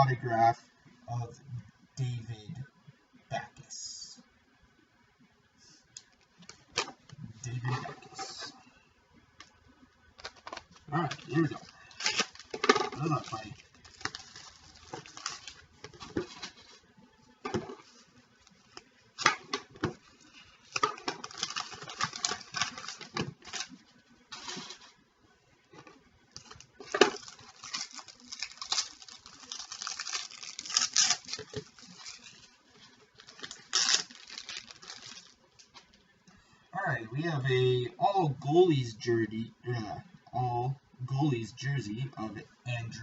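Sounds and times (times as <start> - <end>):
wrappers crinkling and rustling: 10.2 - 25.0, 25.7 - 36.0.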